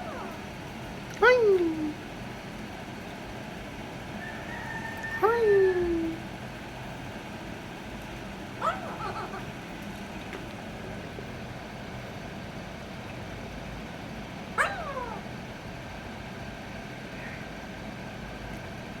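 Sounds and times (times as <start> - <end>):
parrot call: 0.0 - 0.5, 8.6 - 9.6, 14.6 - 15.4
steady background hiss: 0.0 - 19.0.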